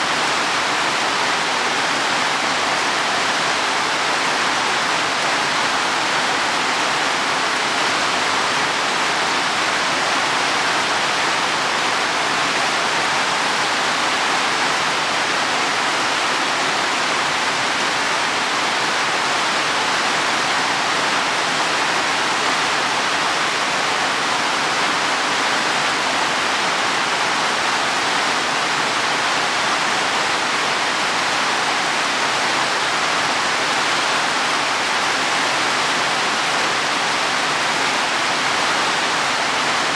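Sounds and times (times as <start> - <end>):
heavy rain on leaves: 0.0 - 39.9.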